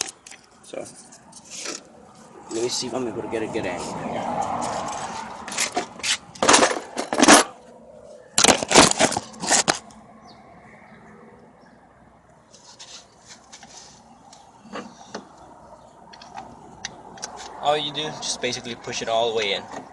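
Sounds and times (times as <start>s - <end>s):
handling knocks and scrapes: 0.0s - 1.9s, 4.4s - 7.6s, 8.4s - 9.8s, 12.5s - 14.0s.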